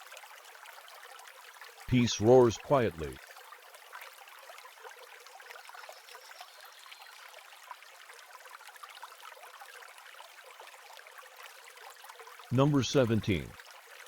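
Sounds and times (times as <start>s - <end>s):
trickle of stream water: 0.0s - 1.9s, 3.1s - 12.5s, 13.6s - 14.0s.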